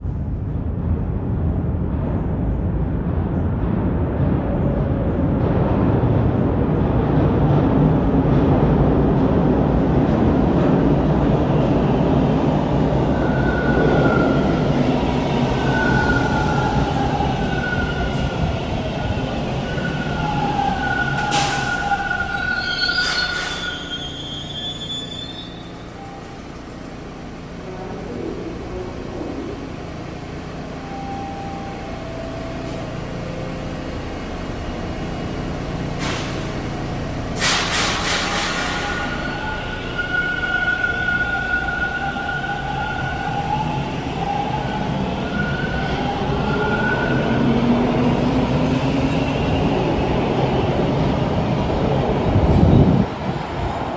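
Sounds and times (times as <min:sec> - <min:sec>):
subway train rumbling: 0:00.0 - 0:53.9
wheel and brake squeals: 0:19.7 - 0:26.8, 0:37.4 - 0:47.4
short air hisses: 0:36.0 - 0:36.6, 0:37.4 - 0:39.2.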